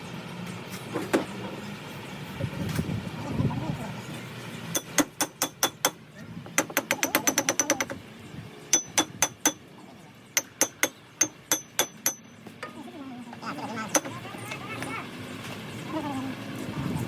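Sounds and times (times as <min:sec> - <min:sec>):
hammer striking steel: 0:04.7 - 0:06.0, 0:06.6 - 0:08.0, 0:08.7 - 0:09.7, 0:10.4 - 0:12.4.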